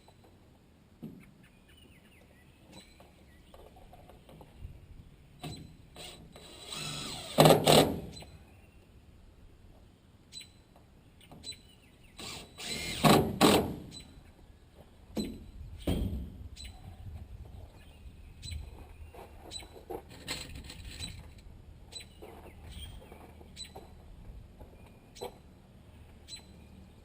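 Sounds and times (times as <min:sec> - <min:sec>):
impact driver driving screws: 0:05.5 - 0:08.2, 0:12.2 - 0:14.0.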